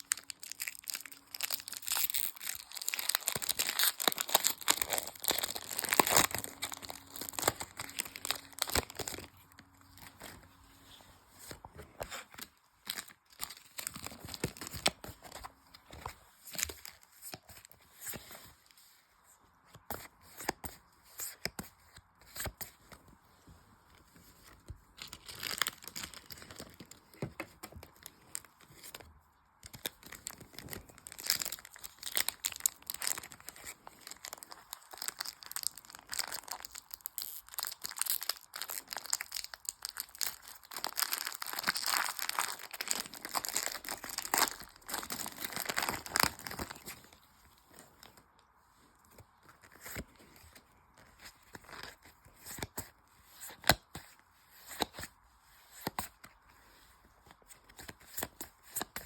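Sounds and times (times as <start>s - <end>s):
card pack wrappers tearing: 0.0s - 9.4s, 25.0s - 26.8s, 29.7s - 47.0s.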